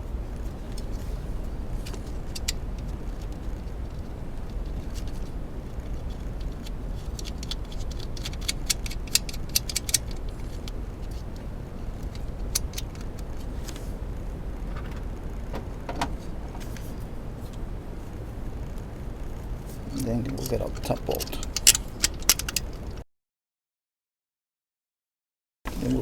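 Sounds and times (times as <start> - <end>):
steady low hum: 0.0 - 23.0, 25.7 - 26.0
metal bolt and nut clinking: 6.4 - 11.2, 19.9 - 22.9.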